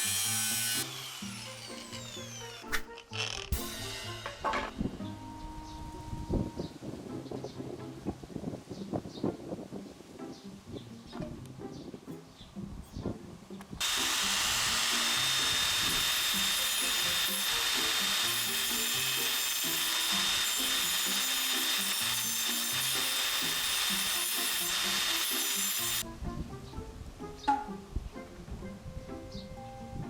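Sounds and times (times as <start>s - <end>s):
angle grinder on steel: 0.0s - 5.0s, 13.8s - 26.0s
background music: 0.0s - 30.0s.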